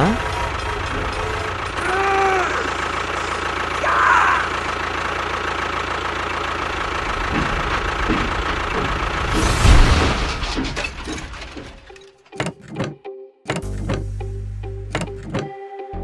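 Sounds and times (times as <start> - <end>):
engine idling: 0.0 - 12.0.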